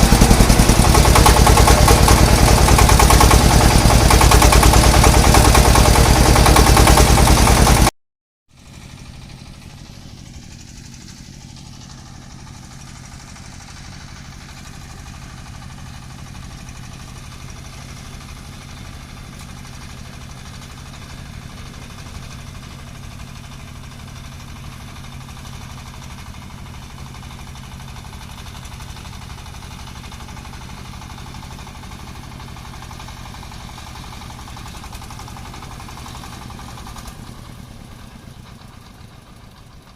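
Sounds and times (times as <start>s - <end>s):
loud engine running: 0.0s - 7.9s, 8.6s - 39.9s
engine pulsing quietly: 8.6s - 39.9s.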